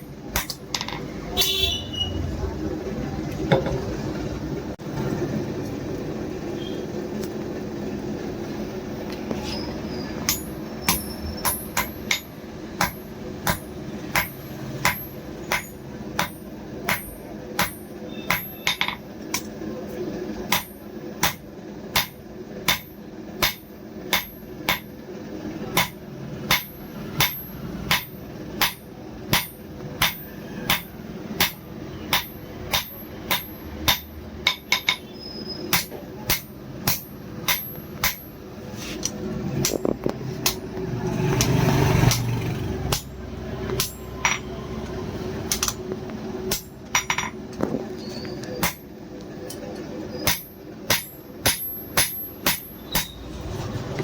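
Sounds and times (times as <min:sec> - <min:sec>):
hammer striking an anvil: 0:00.3 - 0:01.1, 0:10.2 - 0:19.5, 0:20.5 - 0:25.0, 0:25.7 - 0:35.1, 0:35.7 - 0:38.4, 0:42.9 - 0:44.6, 0:46.5 - 0:47.4, 0:48.6 - 0:48.9, 0:50.2 - 0:53.2.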